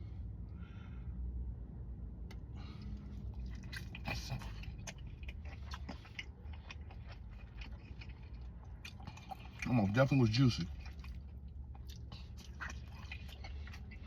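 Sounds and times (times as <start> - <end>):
wet mouth clicks and smacks: 2.3 - 9.8
chewing meat: 2.3 - 14.0.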